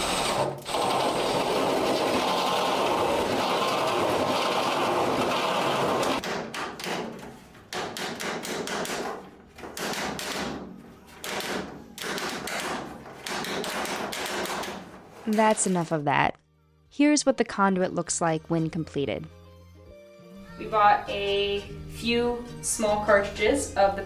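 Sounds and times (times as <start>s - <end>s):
electric drill boring through metal: 0.0s - 6.2s
rasping bursts and knocks: 0.0s - 15.5s.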